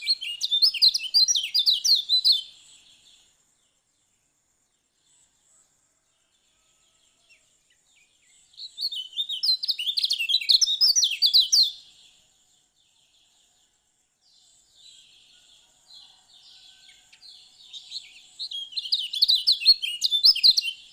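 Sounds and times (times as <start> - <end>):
small bird twittering: 0.0 - 2.6, 8.6 - 11.8, 18.4 - 20.9.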